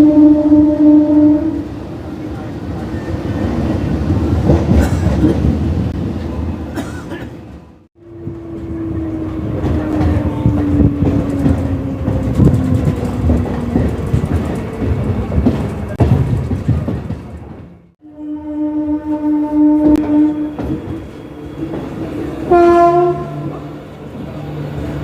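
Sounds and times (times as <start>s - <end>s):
train horn falling in pitch: 0.0s - 1.7s, 18.0s - 21.0s, 22.4s - 23.6s
train wheels clattering: 4.1s - 5.6s, 8.3s - 17.8s.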